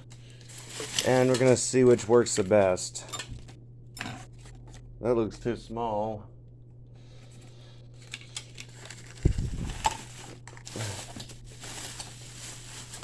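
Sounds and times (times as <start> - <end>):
plastic adapters rustling and clicking: 8.0 - 12.3.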